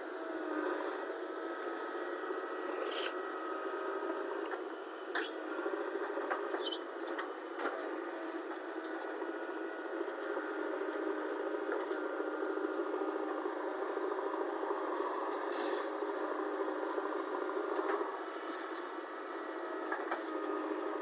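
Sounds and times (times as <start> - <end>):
high thin squeak: 2.7 - 3.2, 5.2 - 7.0.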